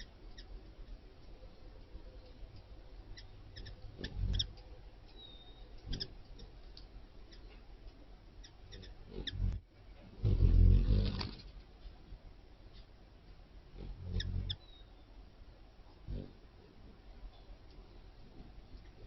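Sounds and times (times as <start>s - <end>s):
bat wing flutter: 10.2s - 11.6s.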